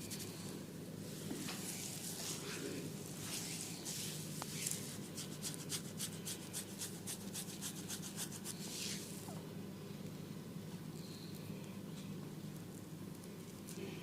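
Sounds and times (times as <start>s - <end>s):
low steady hum: 0.0s - 14.0s
hands rubbing scalp and hair: 1.3s - 9.2s.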